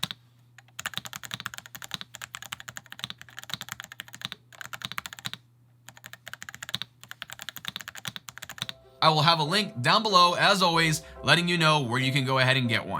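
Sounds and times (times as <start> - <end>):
mechanical keyboard typing: 0.0 - 8.8.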